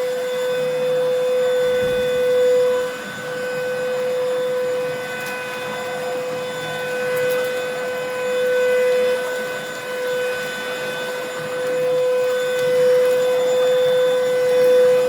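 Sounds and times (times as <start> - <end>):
stick vacuum running: 0.0 - 15.0.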